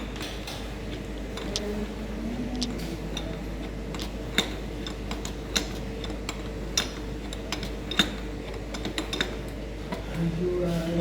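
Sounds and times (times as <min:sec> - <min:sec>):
steady hum: 0:00.0 - 0:06.8
small hard objects clicking: 0:02.5 - 0:02.8.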